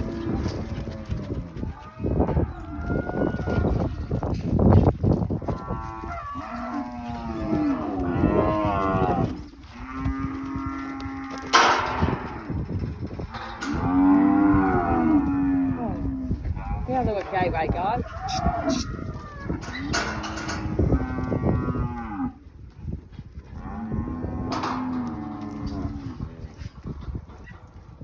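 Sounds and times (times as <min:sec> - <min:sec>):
cattle mooing: 0:05.5 - 0:12.5, 0:13.3 - 0:22.4, 0:23.6 - 0:26.3.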